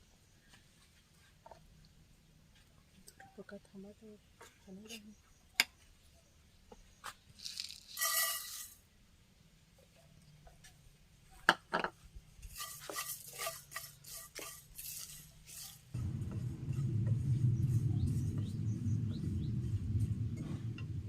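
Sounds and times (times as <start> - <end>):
utensils clinking against pots: 7.6 - 8.8, 12.4 - 15.2
steady low rumble: 15.9 - 21.0.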